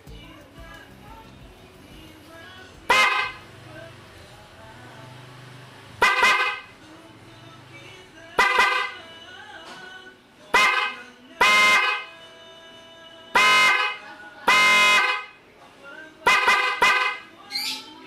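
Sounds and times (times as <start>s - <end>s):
scooter horn blasts: 2.9s - 3.4s, 6.0s - 6.7s, 8.4s - 9.0s, 10.5s - 12.2s, 13.3s - 15.4s, 16.2s - 17.3s.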